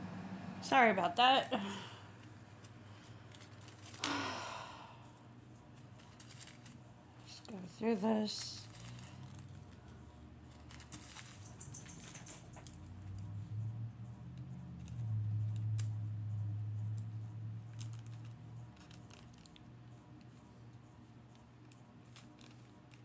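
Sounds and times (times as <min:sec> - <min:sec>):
steady low hum: 0:00.0 - 0:23.0
plastic bags clicking and rustling: 0:05.9 - 0:06.8, 0:08.1 - 0:09.8, 0:10.5 - 0:13.2, 0:17.7 - 0:19.7, 0:22.1 - 0:23.0.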